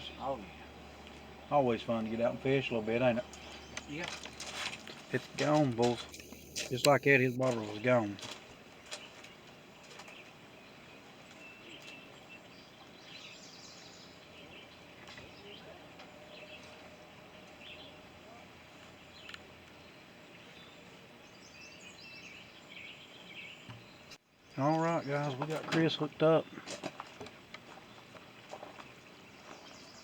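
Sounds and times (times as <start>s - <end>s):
faint bird chirps: 6.0s - 8.0s.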